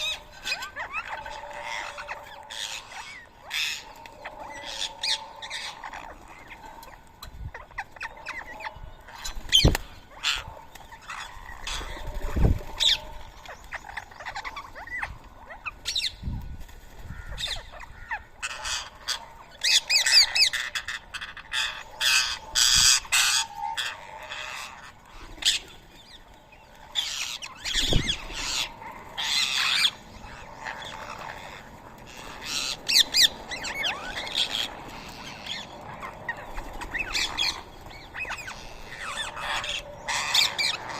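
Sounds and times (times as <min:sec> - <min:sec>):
parakeets squawking: 0:00.0 - 0:16.1, 0:26.9 - 0:40.9.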